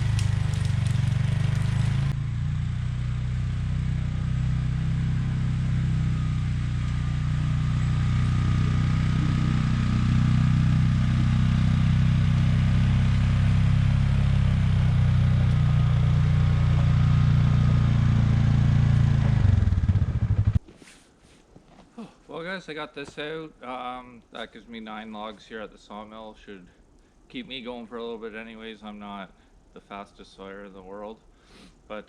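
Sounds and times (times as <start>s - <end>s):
atv engine running at low revs: 0.0s - 20.6s.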